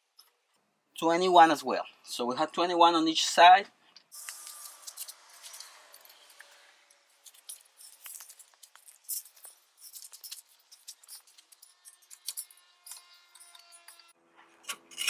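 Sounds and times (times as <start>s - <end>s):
metal tools clicking and clinking: 4.3s - 15.0s.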